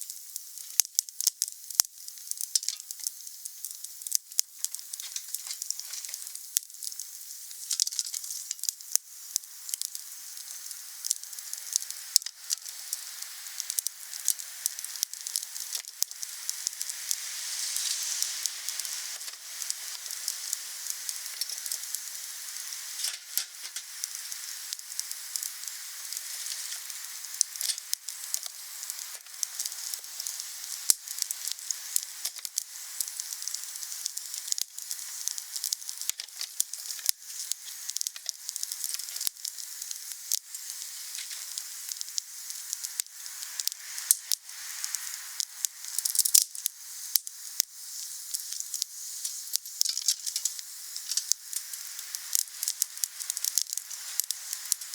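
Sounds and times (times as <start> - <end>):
wood fire crackling and popping: 0.0 - 54.9.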